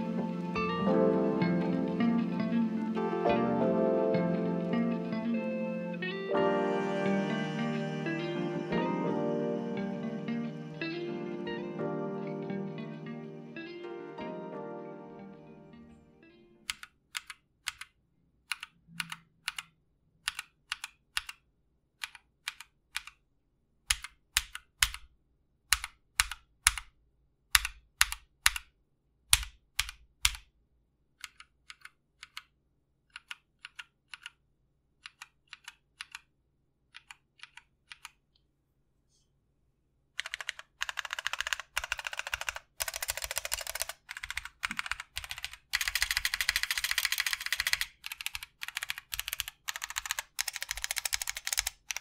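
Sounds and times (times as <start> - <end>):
mechanical keyboard typing: 16.7 - 21.4, 22.0 - 23.2, 23.9 - 25.1, 25.7 - 26.9, 27.5 - 28.7, 29.3 - 30.4, 31.2 - 32.5, 33.1 - 34.4, 35.0 - 36.2, 36.9 - 38.2, 40.2 - 52.0.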